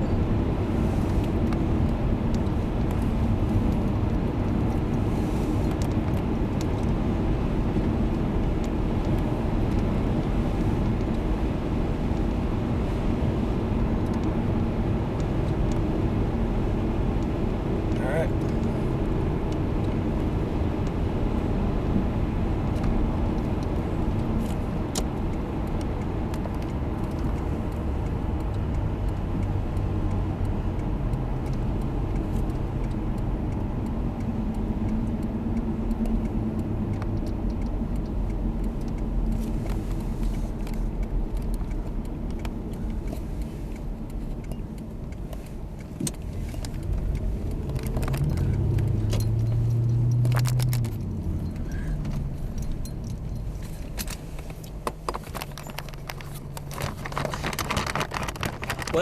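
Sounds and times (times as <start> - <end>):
car engine hum: 0.0 - 59.0
sharp ticks and clicks: 0.0 - 59.0.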